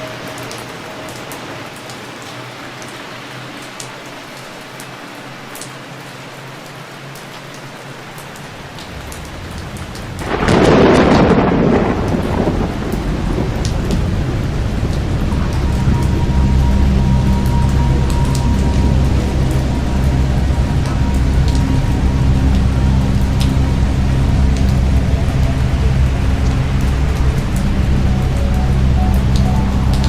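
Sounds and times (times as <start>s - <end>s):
heavy rain: 0.0s - 30.0s
thunder clap rumbling: 8.9s - 30.0s.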